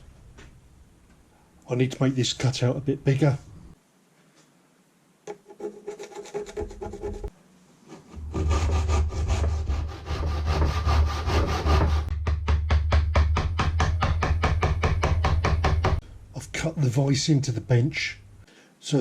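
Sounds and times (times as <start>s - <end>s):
saw cutting wood: 8.1s - 12.1s.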